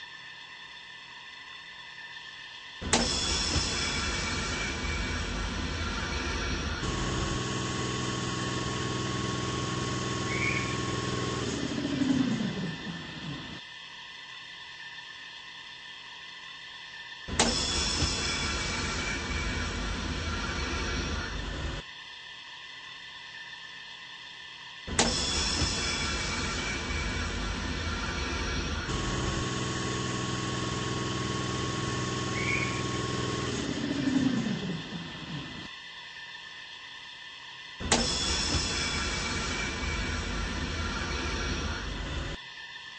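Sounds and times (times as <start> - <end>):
compressor running: 2.8 - 13.6, 17.3 - 21.8, 24.9 - 35.7, 37.8 - 42.4
motor winding down: 2.8 - 13.6, 17.3 - 21.8, 24.9 - 35.7, 37.8 - 42.4
high thin whine: 2.9 - 13.6, 25.0 - 35.7.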